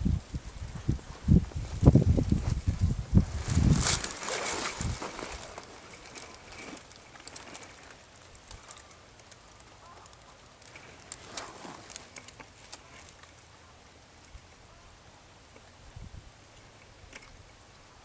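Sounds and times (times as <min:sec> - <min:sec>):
small clicks and rustles: 0:00.1 - 0:13.6, 0:16.5 - 0:17.8
faint bird calls: 0:08.5 - 0:11.5.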